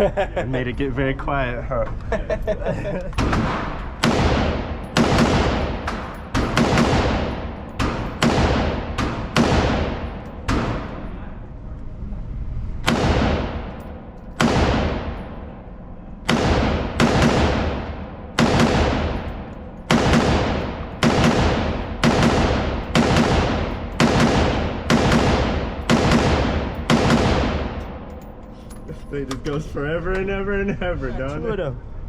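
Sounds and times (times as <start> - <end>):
gunshots ringing: 3.2 - 11.2, 12.8 - 28.3.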